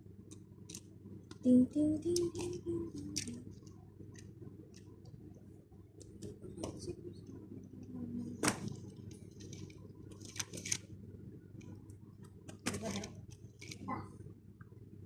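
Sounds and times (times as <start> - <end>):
plastic parts clicking: 8.4 - 10.8
packaging rustling: 8.4 - 10.9.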